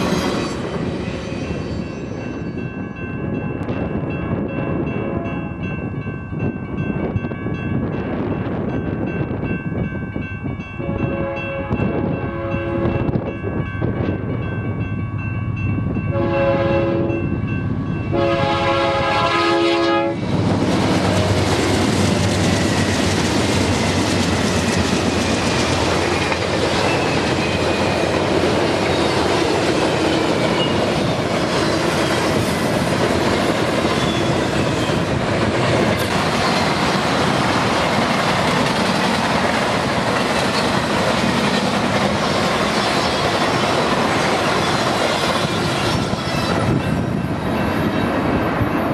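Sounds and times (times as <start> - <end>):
train wheels rushing on rails: 0.0 - 10.0, 10.9 - 48.9
locomotive air horn blasts: 10.8 - 13.1, 16.1 - 17.2, 18.1 - 20.2
wheels clickety-clack: 20.7 - 46.7.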